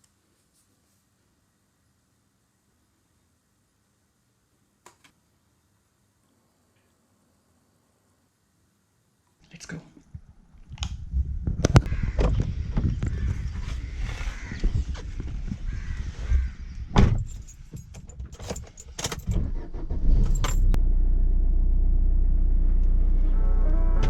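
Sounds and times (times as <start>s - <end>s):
low road rumble: 10.1s - 24.0s
keys jangling: 17.1s - 19.4s, 20.2s - 20.8s
car running: 19.1s - 24.0s
music: 23.2s - 24.0s.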